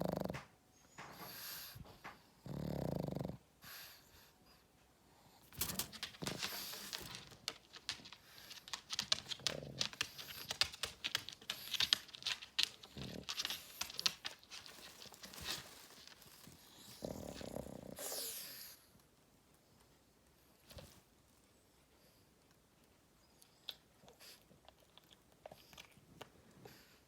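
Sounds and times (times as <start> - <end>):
dog rustling on bedding: 13.0 - 17.4.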